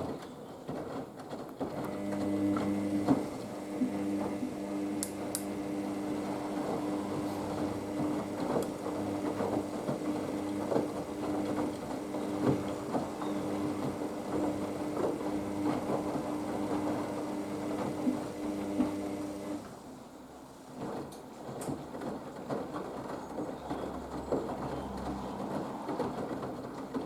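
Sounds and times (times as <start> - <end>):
washing machine motor hum: 1.6 - 20.0
laundry and water sloshing: 5.6 - 27.0.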